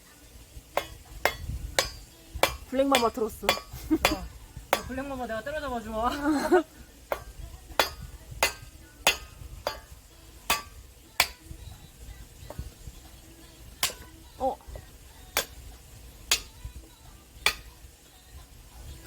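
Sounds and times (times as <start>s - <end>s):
axe chopping firewood: 0.7s - 5.2s, 6.4s - 11.6s, 12.4s - 17.9s.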